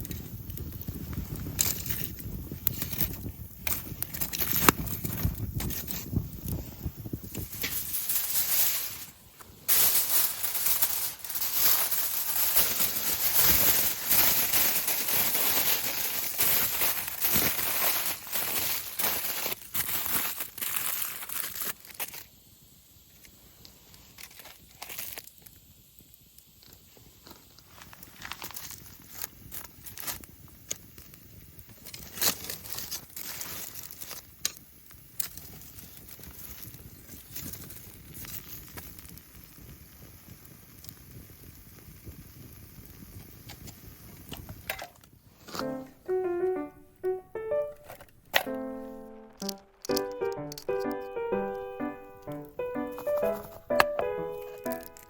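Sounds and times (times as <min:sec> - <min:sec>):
rustling and crinkling: 0:00.0 - 0:22.3, 0:23.2 - 0:25.4, 0:26.6 - 0:31.1, 0:31.7 - 0:34.6, 0:35.2 - 0:39.1, 0:43.3 - 0:55.0
sharp clicks or snaps: 0:47.4 - 0:55.0.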